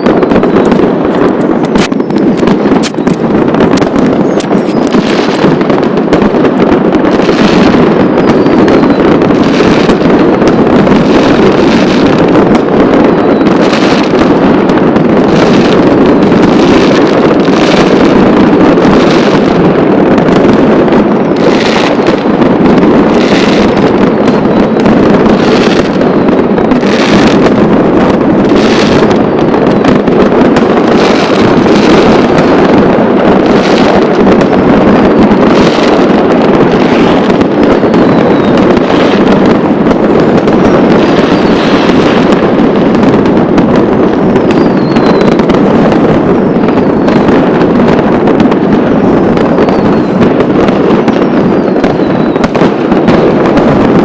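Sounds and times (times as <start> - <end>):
faint firework whistles: 0.0 - 5.6, 7.3 - 10.1, 13.0 - 14.2, 36.8 - 39.3, 44.4 - 45.6, 46.5 - 47.2, 49.4 - 50.3, 51.1 - 53.4
fireworks barrage: 0.0 - 54.0
sharp firework bangs: 0.0 - 54.0.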